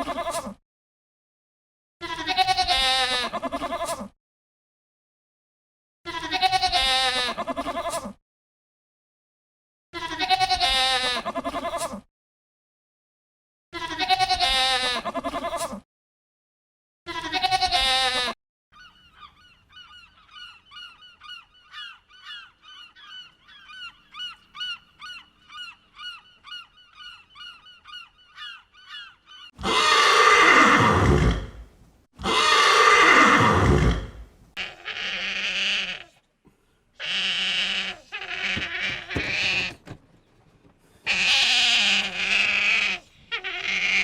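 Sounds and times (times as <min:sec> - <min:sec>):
loud wavering animal calls: 0:18.8 - 0:31.6, 0:32.2 - 0:36.2, 0:37.0 - 0:39.8, 0:41.0 - 0:44.0
loud harsh animal calls: 0:19.7 - 0:31.6, 0:32.2 - 0:36.2, 0:37.0 - 0:39.8, 0:41.0 - 0:44.0.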